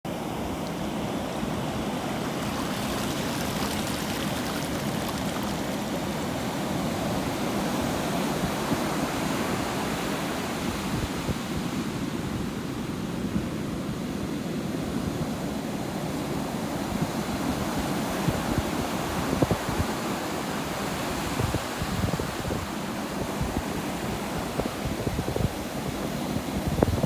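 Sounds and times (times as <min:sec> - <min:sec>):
ocean waves washing on shore: 0:00.1 - 0:11.9.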